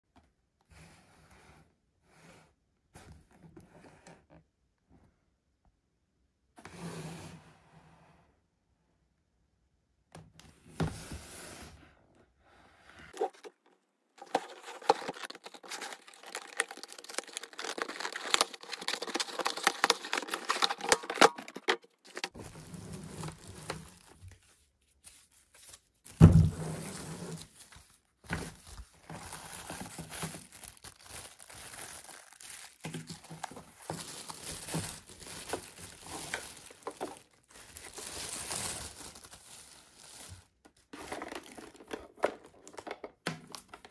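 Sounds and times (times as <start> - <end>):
packaging crinkling and rustling: 13.1 - 43.9.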